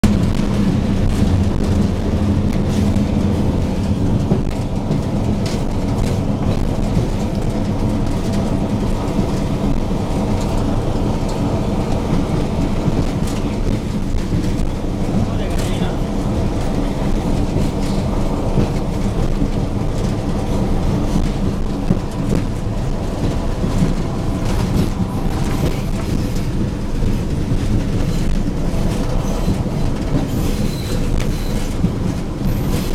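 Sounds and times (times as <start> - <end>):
diesel locomotive engine running: 0.0 - 32.9
train wheels clattering on rails: 0.0 - 32.9.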